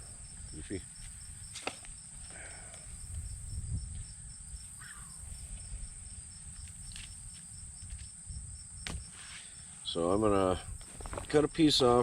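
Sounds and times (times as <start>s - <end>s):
insect pulsing: 0.0s - 11.6s
crickets trilling: 0.0s - 12.0s
faint rustles: 10.5s - 11.6s.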